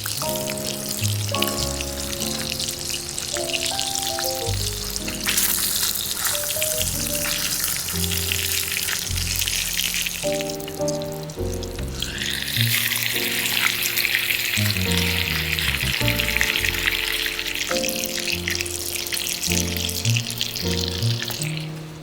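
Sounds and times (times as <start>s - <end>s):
food sizzling in a hot pan: 0.0s - 21.7s
background music: 0.0s - 22.0s.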